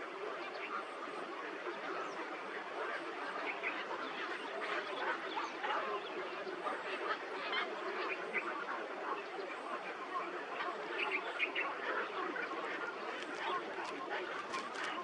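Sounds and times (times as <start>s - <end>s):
flock of birds calling: 0.0s - 15.0s.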